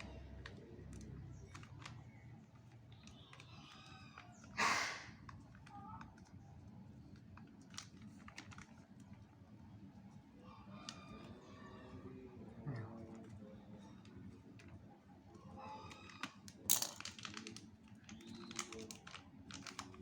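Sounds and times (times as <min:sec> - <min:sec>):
clicks of small parts being handled: 0:16.2 - 0:17.6
loud packaging rustle: 0:16.7 - 0:20.0.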